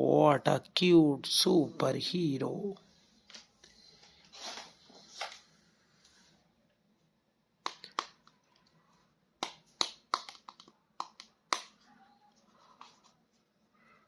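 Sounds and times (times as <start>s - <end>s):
toy figure packaging clicks and taps: 7.6s - 8.6s, 9.4s - 11.8s.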